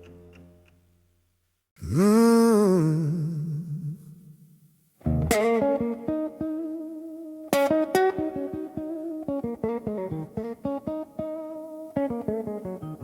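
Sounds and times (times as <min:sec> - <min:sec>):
blues guitar playing: 0:05.0 - 0:13.0.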